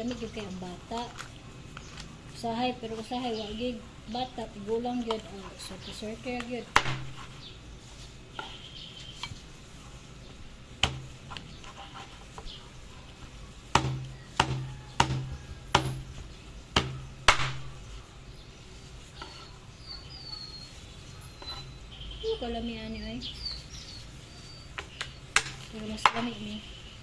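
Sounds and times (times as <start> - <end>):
knife chopping on cutting board: 13.7 - 16.1, 16.8 - 17.7.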